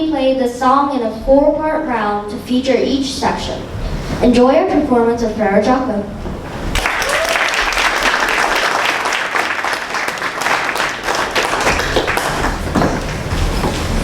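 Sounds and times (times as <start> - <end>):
audience applauding: 6.7 - 13.6
knocks and bumps: 11.6 - 14.0.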